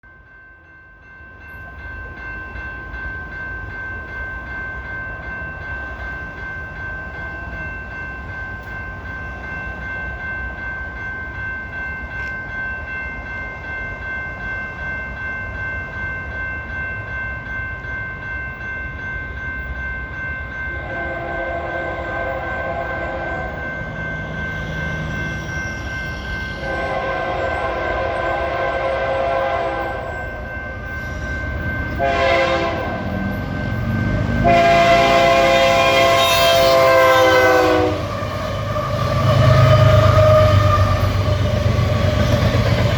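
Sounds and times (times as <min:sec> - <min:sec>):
high ringing tone: 0:00.0 - 0:42.8
locomotive horn blasts: 0:20.8 - 0:23.6, 0:26.6 - 0:30.2, 0:32.0 - 0:33.1, 0:34.4 - 0:41.2
diesel locomotive rumble: 0:20.8 - 0:42.9.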